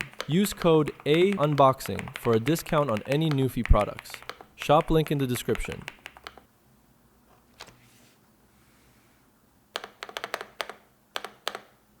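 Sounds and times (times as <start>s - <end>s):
mechanical keyboard typing: 0.0s - 6.5s, 9.8s - 11.7s.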